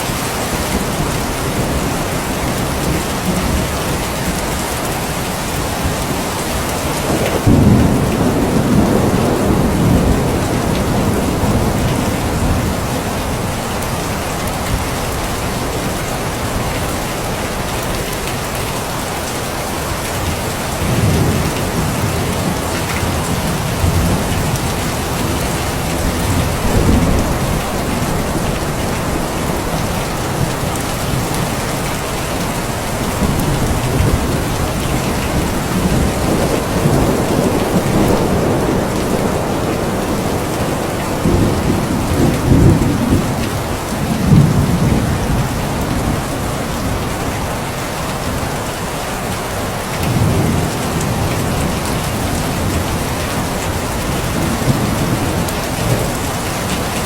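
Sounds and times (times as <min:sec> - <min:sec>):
steady rain: 0:00.0 - 0:57.0
rolling thunder: 0:05.8 - 0:16.5, 0:20.7 - 0:47.1.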